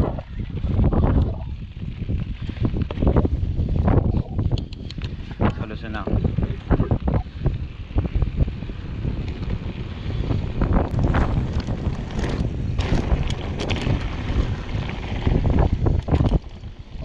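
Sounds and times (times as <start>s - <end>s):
bike rumbling over rocky trail: 0.0s - 17.0s
wind buffeting microphone: 0.0s - 17.0s
bike knocks and rattles: 9.1s - 17.0s.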